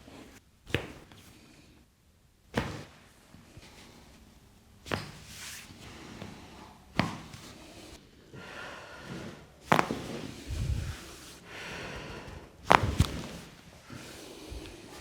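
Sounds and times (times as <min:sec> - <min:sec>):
person breathing: 0:05.7 - 0:15.0.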